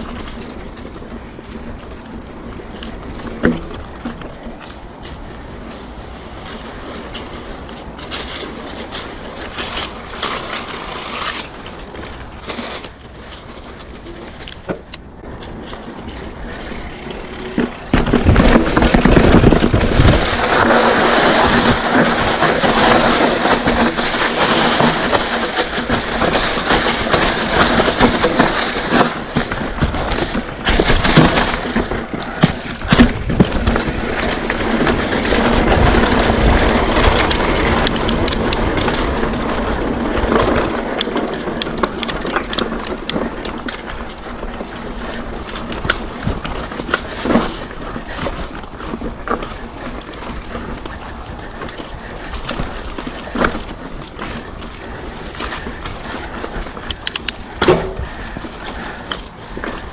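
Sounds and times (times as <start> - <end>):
bike rattling: 0.0 - 59.9
bike tyres on dirt and rocks: 0.0 - 59.9
wind on microphone: 15.9 - 23.8.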